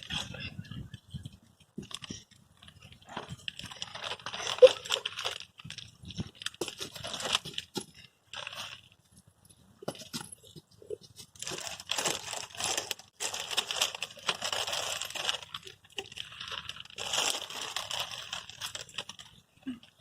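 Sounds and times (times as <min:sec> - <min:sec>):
biscuit packet crinkling: 0:01.8 - 0:09.0, 0:11.2 - 0:19.4.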